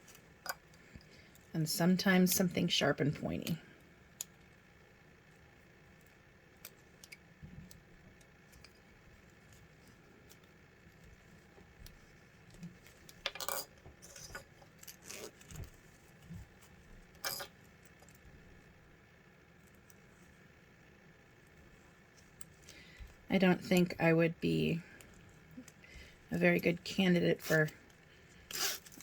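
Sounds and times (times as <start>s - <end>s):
zipper pull clicking and clinking: 13.3s - 15.6s, 28.5s - 29.0s
zipper rasping: 14.9s - 15.6s, 28.5s - 29.0s.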